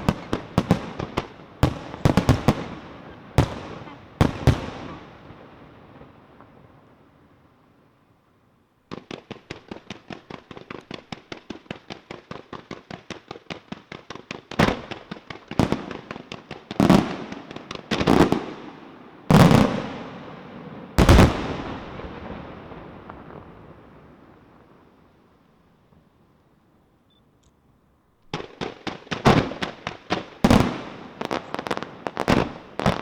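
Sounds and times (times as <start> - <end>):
firework cracks: 0.0 - 5.3, 28.3 - 33.0.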